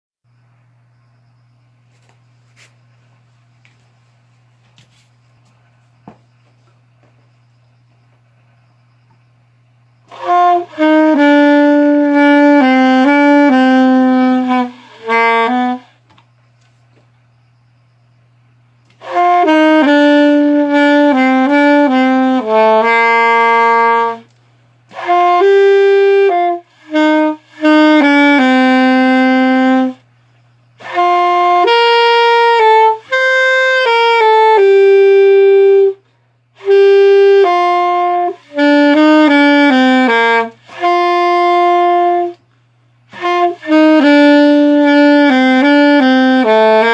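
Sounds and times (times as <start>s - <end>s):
solo wind instrument melody: 10.1s - 16.0s, 19.0s - 24.3s, 24.9s - 30.0s, 30.8s - 36.0s, 36.6s - 42.4s, 43.1s - 46.9s.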